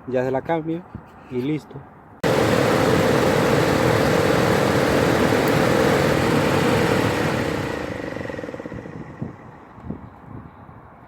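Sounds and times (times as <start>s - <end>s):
blower fan rushing air with hum: 2.2s - 10.5s.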